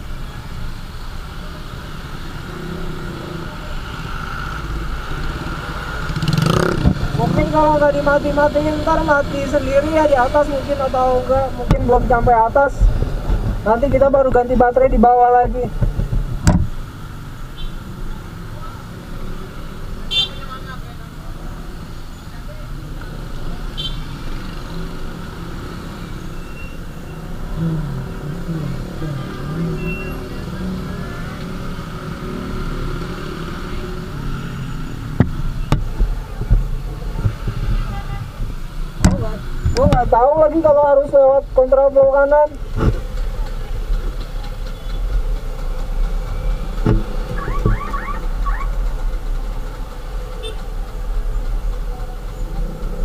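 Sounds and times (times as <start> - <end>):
road noise: 0.0 - 53.0
motorcycle engine: 1.3 - 12.2, 22.8 - 53.0
knock: 15.8 - 16.7, 46.8 - 47.8.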